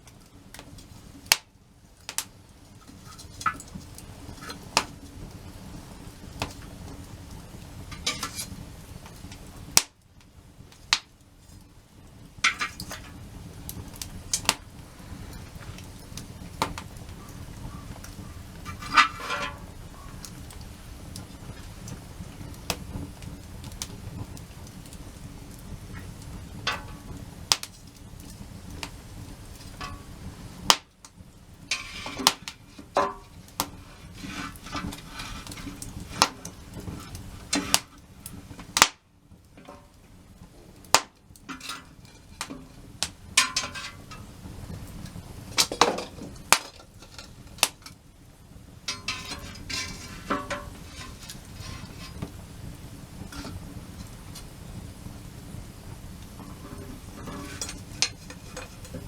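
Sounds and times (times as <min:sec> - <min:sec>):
low rush of burning: 0:00.0 - 0:59.0
wood fire crackling and popping: 0:00.0 - 0:59.0.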